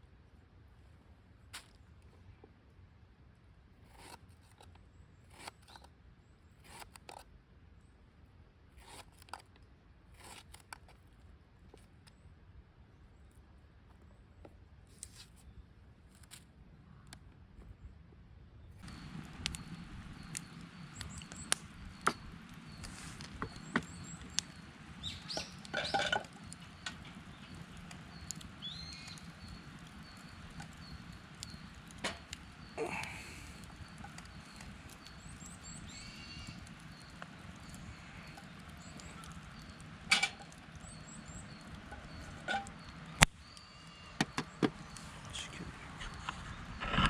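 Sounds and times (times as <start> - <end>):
small birds chirping: 18.6 - 47.0
fire snaps and pops: 18.8 - 43.6
wood fire crackling: 18.8 - 47.0.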